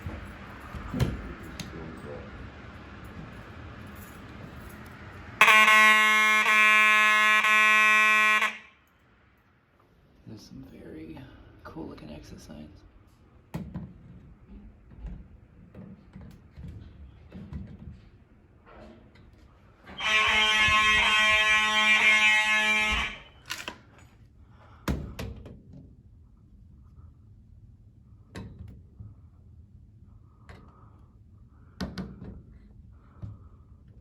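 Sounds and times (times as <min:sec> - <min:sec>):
fire alarm horn blast: 0:04.7 - 0:09.1, 0:19.8 - 0:23.8.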